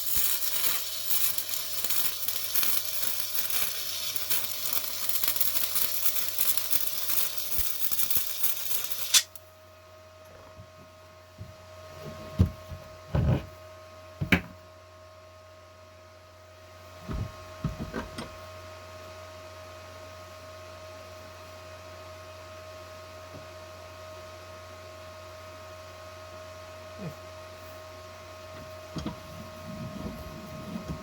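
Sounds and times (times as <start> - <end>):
steady machine hum: 26.6 - 31.0.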